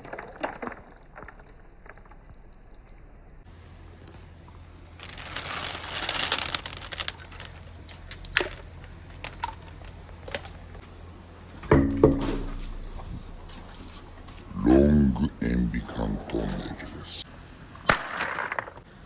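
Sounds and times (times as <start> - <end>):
glass marbles clattering: 5.0 - 10.2
loud knocks with hollow ring: 11.6 - 12.6.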